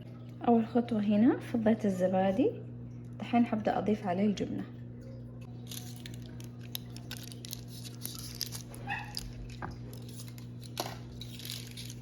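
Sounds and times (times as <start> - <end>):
low electrical hum: 0.0 - 12.0
foil wrappers clicking and rustling: 5.5 - 12.0.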